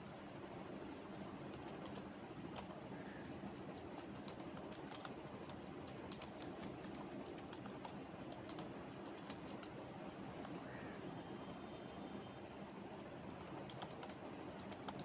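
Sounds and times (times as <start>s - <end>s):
low background hum: 0.0s - 15.0s
keyboard key clicks: 3.8s - 9.8s, 13.5s - 15.0s.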